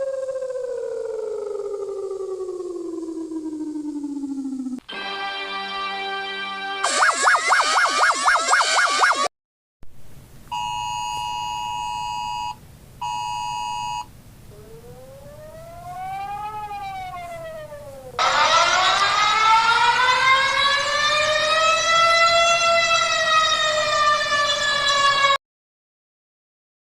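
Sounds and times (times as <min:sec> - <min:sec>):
faint siren tone: 0:00.0 - 0:04.8, 0:06.8 - 0:09.3, 0:10.5 - 0:25.4
loud siren wail: 0:00.0 - 0:05.1, 0:06.8 - 0:09.3, 0:14.5 - 0:25.4
low steady hum: 0:09.9 - 0:18.4.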